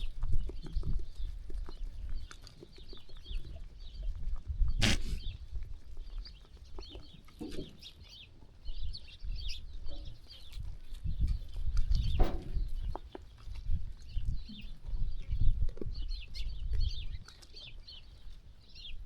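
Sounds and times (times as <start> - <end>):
small birds chirping: 0.0 - 19.0
low animal calls: 4.8 - 5.2.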